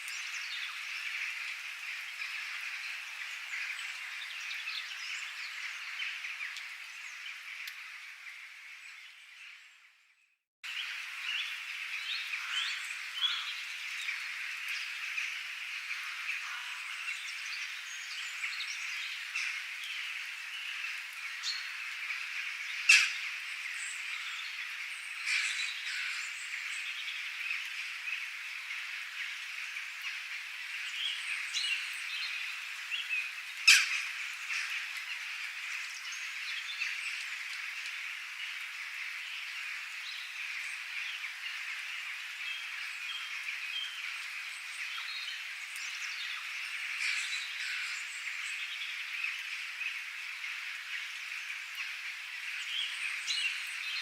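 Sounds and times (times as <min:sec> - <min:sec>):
frogs calling: 0:10.8 - 0:54.0.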